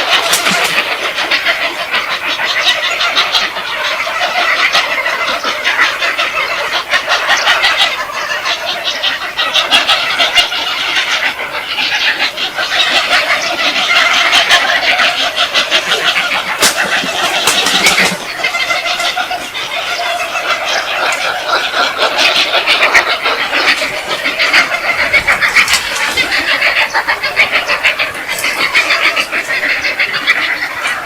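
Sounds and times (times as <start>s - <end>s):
flock of birds chattering: 0.0s - 31.0s.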